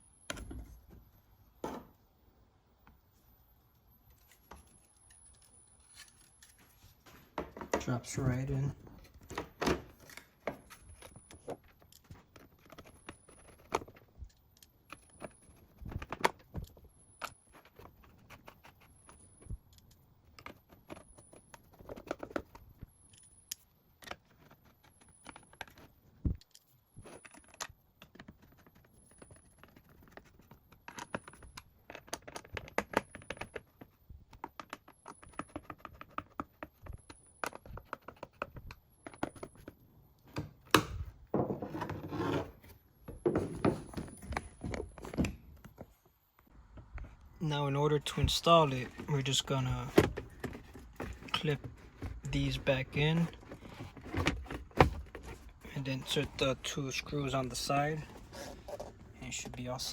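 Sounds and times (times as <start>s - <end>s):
hard plastic parts knocking and clicking: 43.1s - 45.8s, 48.1s - 59.9s.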